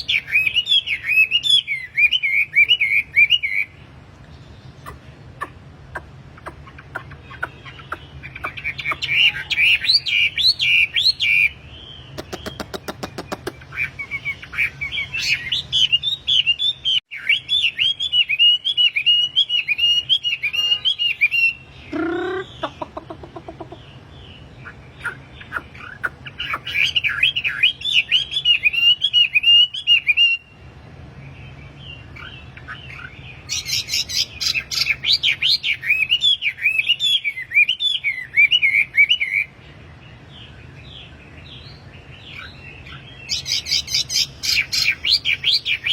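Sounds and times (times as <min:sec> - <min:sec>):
songbird chattering song: 0:00.0 - 0:45.9
bird low call: 0:04.8 - 0:11.5
bird rapid clicking: 0:12.2 - 0:13.6.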